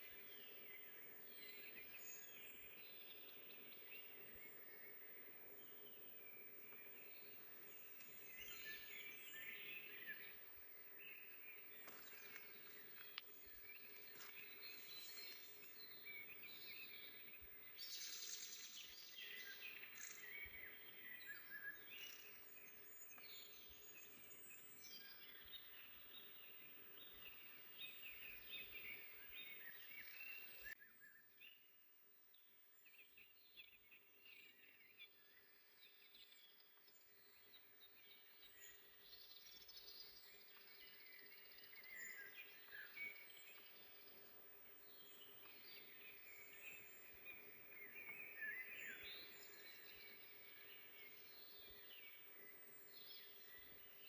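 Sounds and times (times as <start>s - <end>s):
background hiss: 0.0s - 30.8s
songbirds singing and chirping: 0.0s - 54.0s.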